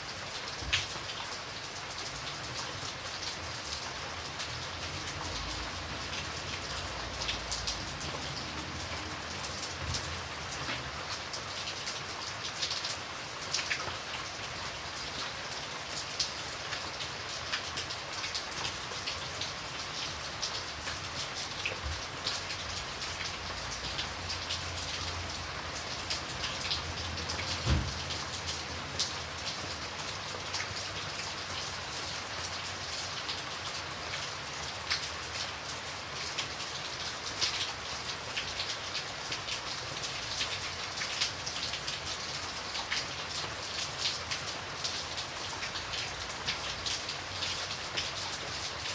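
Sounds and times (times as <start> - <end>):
light rain falling: 0.0 - 48.9
dull low thump: 27.6 - 28.0.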